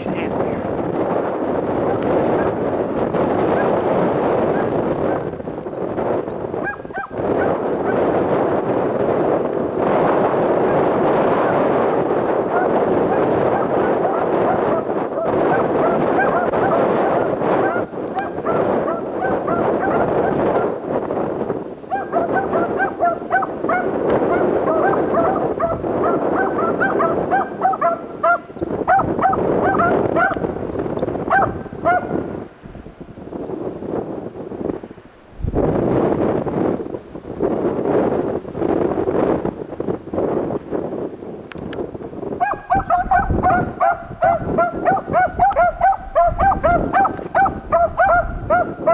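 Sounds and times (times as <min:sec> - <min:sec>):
hounds barking and baying: 0:01.6 - 0:05.3, 0:06.6 - 0:08.2, 0:10.2 - 0:20.9, 0:21.9 - 0:30.6, 0:31.2 - 0:32.4, 0:42.4 - 0:48.9
dogs yelping: 0:06.6 - 0:08.0, 0:12.4 - 0:20.8, 0:21.9 - 0:30.6, 0:31.2 - 0:32.2, 0:42.4 - 0:48.9.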